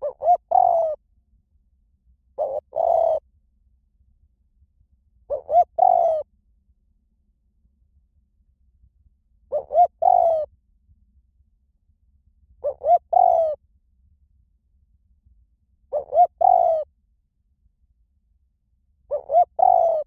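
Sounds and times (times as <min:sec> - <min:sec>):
dove cooing: 0:00.0 - 0:01.0, 0:02.4 - 0:03.2, 0:05.3 - 0:06.2, 0:09.5 - 0:10.5, 0:12.6 - 0:13.6, 0:15.9 - 0:16.9, 0:19.1 - 0:20.0.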